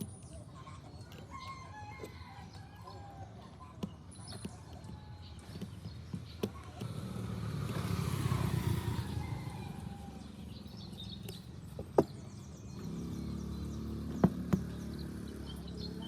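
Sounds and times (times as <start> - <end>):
vehicle passing by: 6.6 - 16.0.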